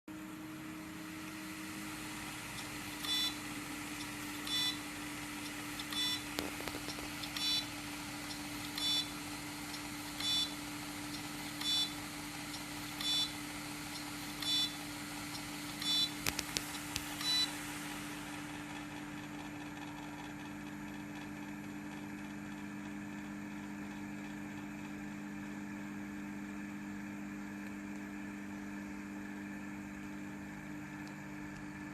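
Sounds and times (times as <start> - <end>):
steady low hum: 0.1 - 31.9
hard drive sharp clicks: 1.8 - 25.0
hard drive short high beeps: 2.5 - 6.5, 7.2 - 16.3, 17.0 - 17.6.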